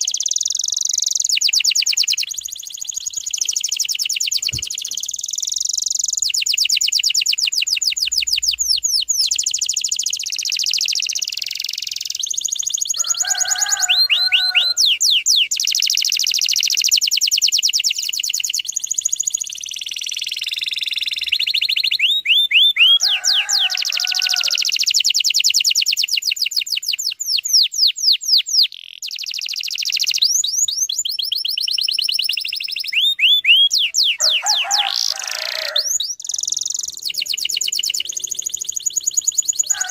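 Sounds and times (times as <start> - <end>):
canary singing trills: 0.0 - 39.9
low rough bird call: 32.8 - 39.9.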